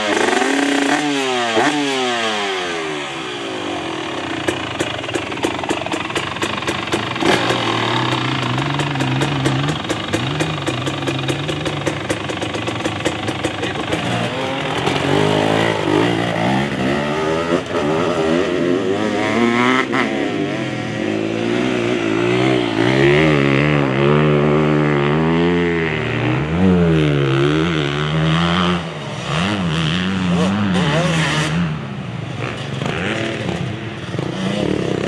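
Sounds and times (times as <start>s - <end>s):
two-stroke engine revving: 0.0s - 35.0s.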